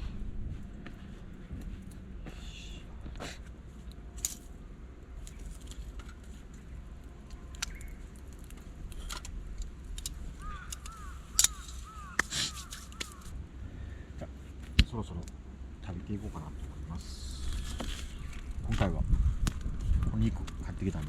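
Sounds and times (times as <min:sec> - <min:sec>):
wind rumbling on microphone: 0:00.0 - 0:02.2, 0:17.0 - 0:21.0
camp gear clicks and knocks: 0:04.1 - 0:04.5, 0:05.2 - 0:13.3
bird calling: 0:07.4 - 0:08.2, 0:10.3 - 0:13.4.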